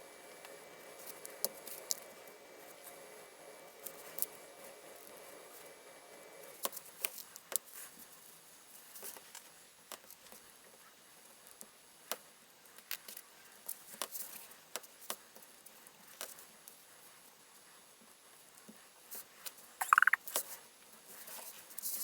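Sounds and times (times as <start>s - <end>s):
brief high squeak: 19.8s - 20.2s.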